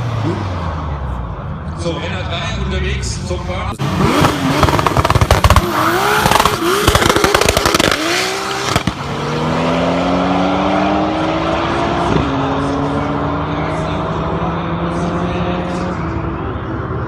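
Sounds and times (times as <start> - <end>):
car engine revving: 3.8 - 17.0
exhaust crackling pops: 4.2 - 9.0.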